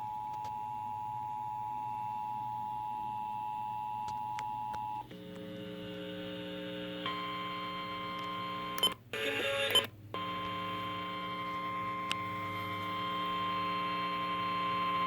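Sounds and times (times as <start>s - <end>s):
buzzing hum: 4.6s - 15.0s.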